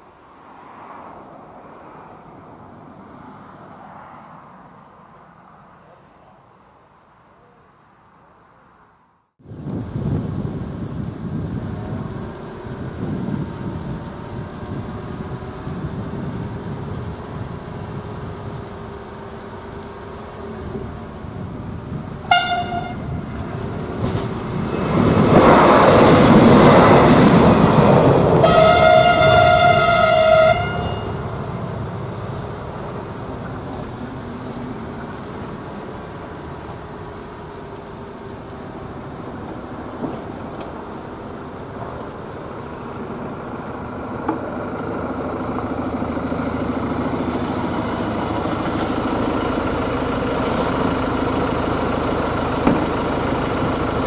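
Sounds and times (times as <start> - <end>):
vehicle engine rumbling: 9.4 - 54.0
train horn: 22.2 - 23.2, 28.4 - 31.3.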